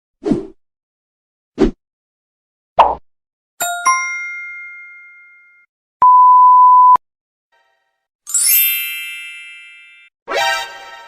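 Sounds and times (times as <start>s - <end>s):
censor bleep: 6.0s - 7.0s
shimmering chime: 8.3s - 10.1s.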